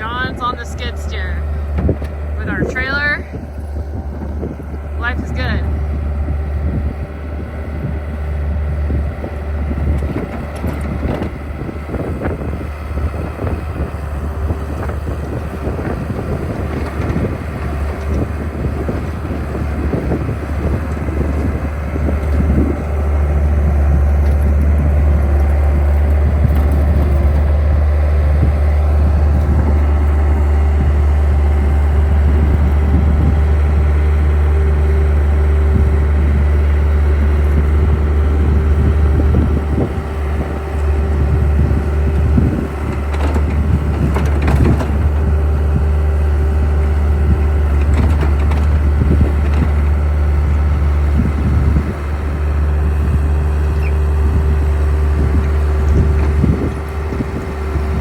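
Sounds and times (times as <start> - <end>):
engine rumbling: 0.0 - 58.0
wind buffeting microphone: 0.0 - 58.0.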